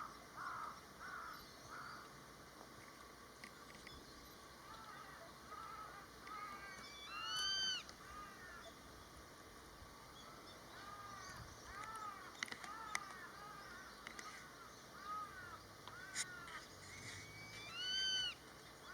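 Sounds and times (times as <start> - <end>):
sharp clicks: 11.8 - 13.2
buzzard calling: 15.1 - 18.4.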